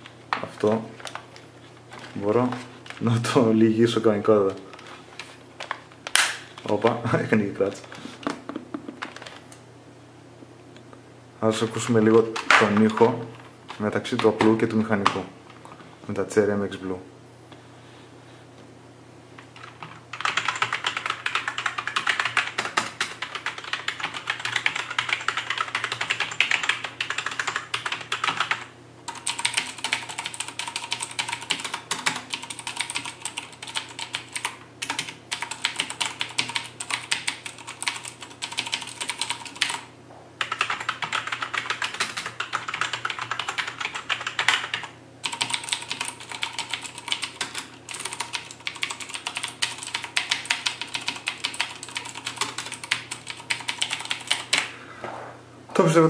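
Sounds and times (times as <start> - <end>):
mechanical keyboard clicks: 19.6 - 39.8, 40.4 - 54.6
fast typing on keyboard: 19.6 - 54.7.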